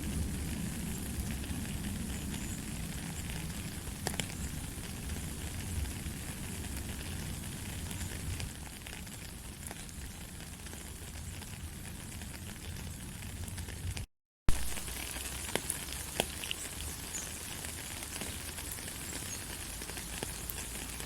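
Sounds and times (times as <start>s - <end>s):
steady rain falling: 0.0s - 21.0s
drip-like ticks: 3.2s - 5.2s, 14.8s - 21.0s.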